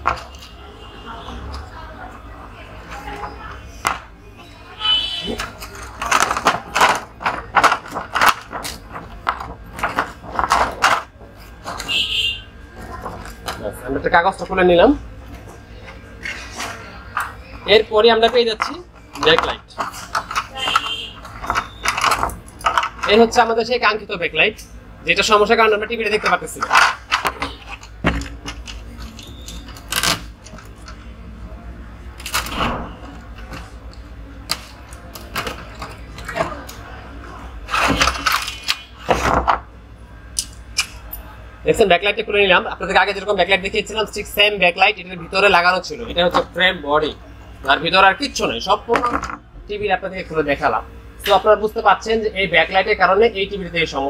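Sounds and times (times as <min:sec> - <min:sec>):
plastic and paper crinkling: 0:05.3 - 0:12.0, 0:12.7 - 0:14.5
clicks of parts being unclipped: 0:40.4 - 0:41.0.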